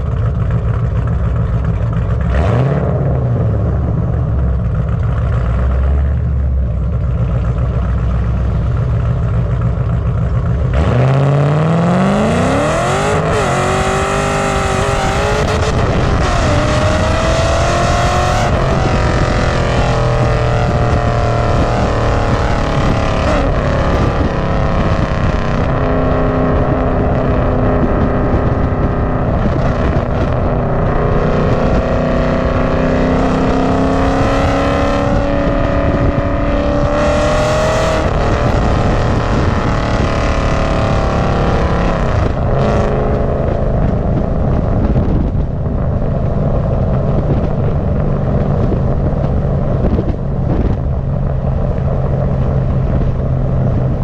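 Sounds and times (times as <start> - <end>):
car engine running hard: 0.0 - 54.0.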